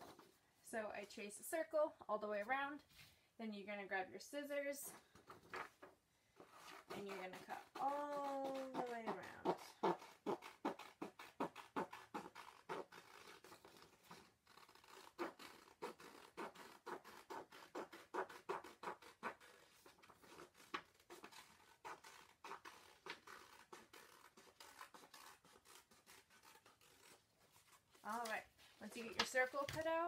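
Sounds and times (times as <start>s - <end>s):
scissors snipping paper: 6.7s - 30.0s.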